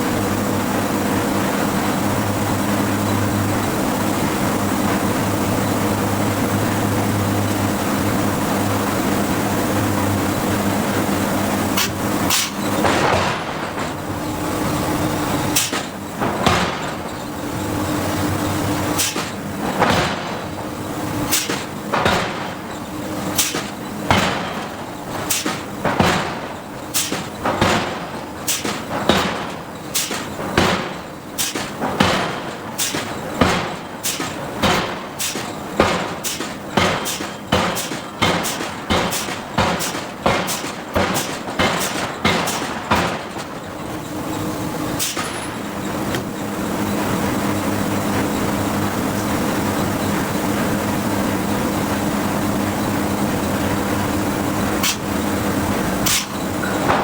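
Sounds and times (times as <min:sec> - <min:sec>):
forging hammer striking steel: 0:21.3 - 0:22.7, 0:23.3 - 0:43.5, 0:54.8 - 0:55.2, 0:56.0 - 0:57.0.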